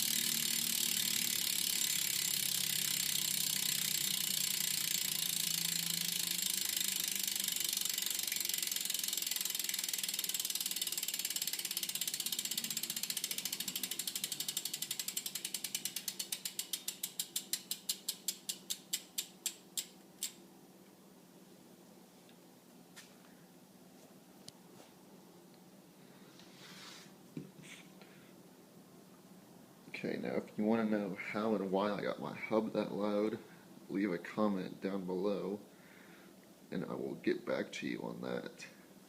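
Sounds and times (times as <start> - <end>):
bicycle hub ratcheting clicks: 0.0 - 20.4.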